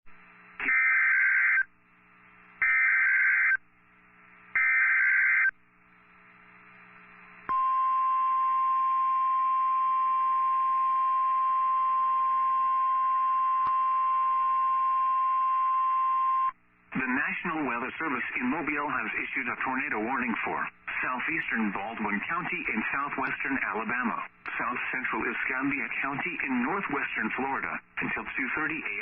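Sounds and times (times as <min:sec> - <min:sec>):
steady warning alarm tone: 0:00.7 - 0:01.7, 0:02.6 - 0:03.6, 0:04.6 - 0:05.5.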